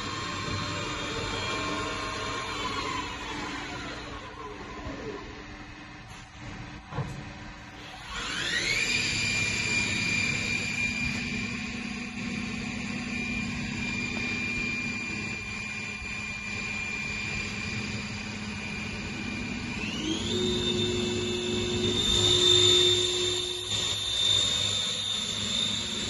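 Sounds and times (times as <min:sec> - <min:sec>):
machine spindle whine: 0:00.0 - 0:26.0.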